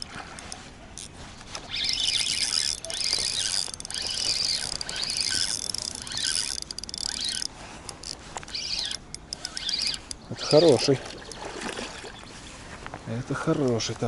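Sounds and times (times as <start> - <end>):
spinning reel whirring squeal: 1.0 - 10.9.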